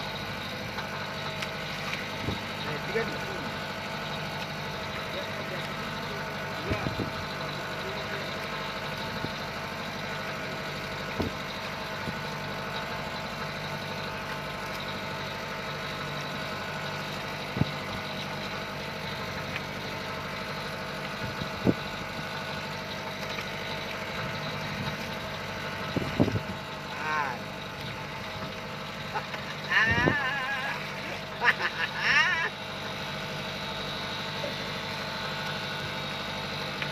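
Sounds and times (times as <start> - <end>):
boat engine running: 0.0 - 36.9.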